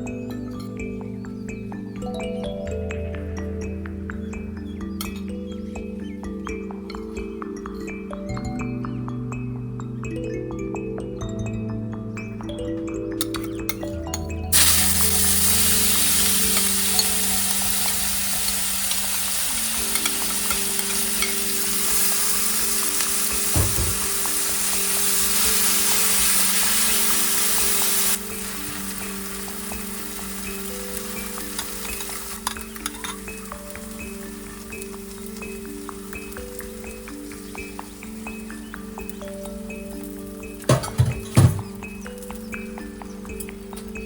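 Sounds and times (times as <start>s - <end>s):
food sizzling in frying pan: 14.5s - 40.7s.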